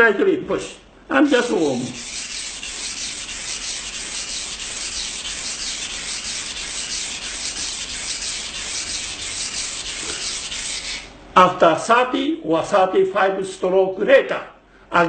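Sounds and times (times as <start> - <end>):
knife scraping on whetstone: 1.3 - 11.1.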